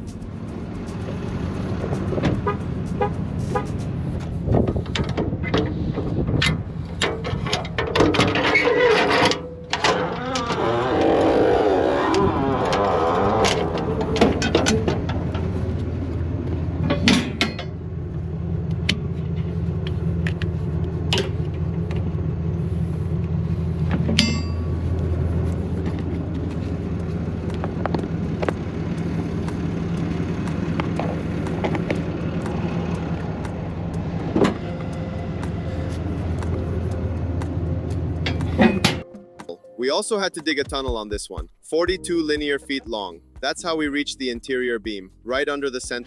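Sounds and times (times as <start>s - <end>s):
engine droning: 0.0s - 41.0s
knocks and clanks: 12.6s - 15.6s, 37.4s - 39.1s.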